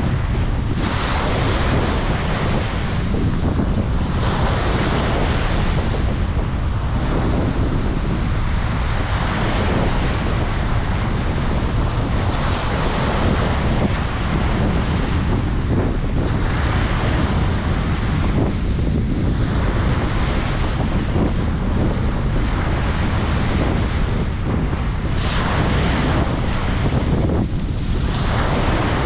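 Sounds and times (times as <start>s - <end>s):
ocean waves breaking: 0.0s - 29.0s
wind rumbling on microphone: 0.0s - 29.0s.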